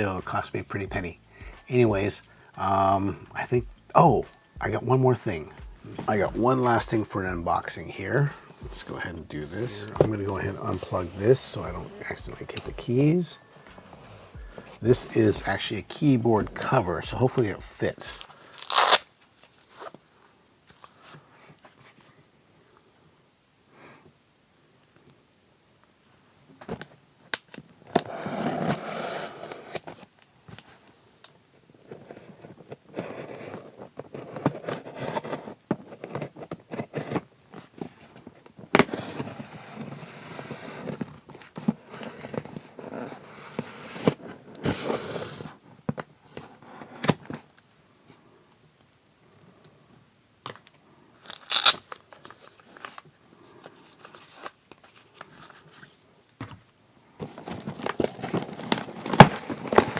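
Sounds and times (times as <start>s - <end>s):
plastic wrap crinkling: 18.0s - 19.7s, 51.2s - 53.1s, 57.6s - 59.9s
packaging being torn open: 18.6s - 19.1s, 51.3s - 53.0s.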